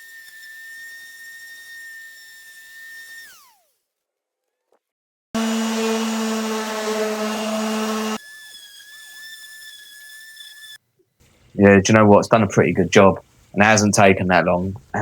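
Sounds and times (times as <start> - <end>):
orbital sander running: 5.4 - 8.3.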